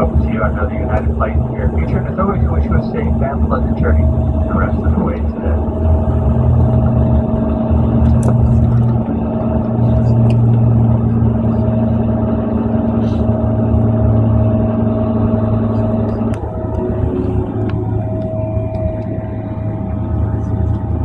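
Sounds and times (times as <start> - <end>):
jet engines idling in cabin: 0.0 - 21.0.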